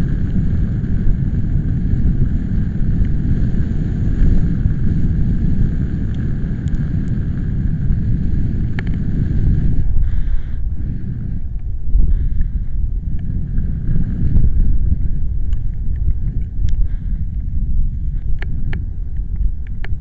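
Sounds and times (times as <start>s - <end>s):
wind buffeting microphone: 0.0s - 20.0s
faint ticks: 6.0s - 7.5s, 8.6s - 9.1s, 11.5s - 13.7s, 15.4s - 17.5s, 18.1s - 20.0s.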